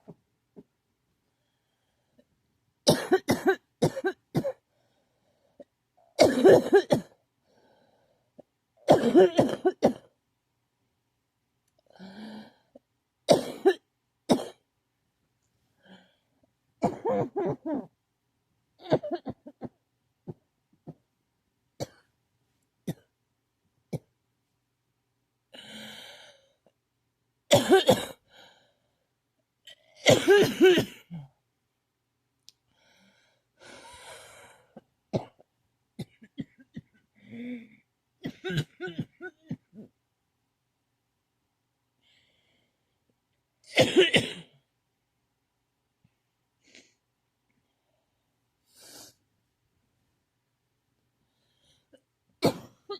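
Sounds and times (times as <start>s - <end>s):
person coughing: 2.9s - 4.6s, 6.2s - 7.2s, 8.9s - 10.1s, 16.8s - 17.9s, 18.8s - 19.8s, 27.5s - 28.2s, 30.0s - 31.3s, 36.0s - 39.9s, 43.7s - 44.5s, 52.4s - 52.9s.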